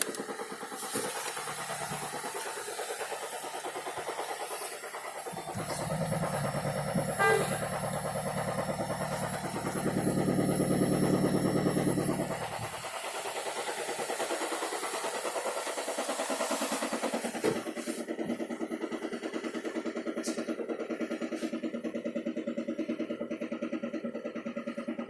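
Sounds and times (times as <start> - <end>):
vehicle engine knocking: 0.0 - 25.0
brief pitched tone: 5.4 - 12.4.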